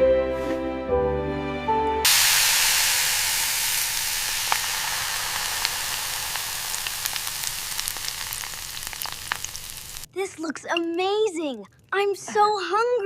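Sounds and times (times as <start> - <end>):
crackling pops: 2.1 - 10.1
food sizzling in a pan: 2.1 - 10.1.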